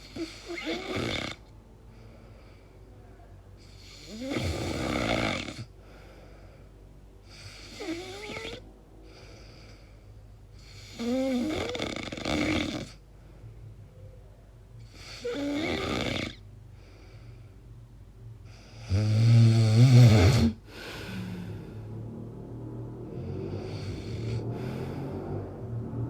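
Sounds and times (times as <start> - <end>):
person snoring: 0.0 - 1.4, 3.7 - 5.7, 7.3 - 8.6, 10.6 - 13.0, 14.9 - 16.4, 18.7 - 22.1, 23.0 - 25.6.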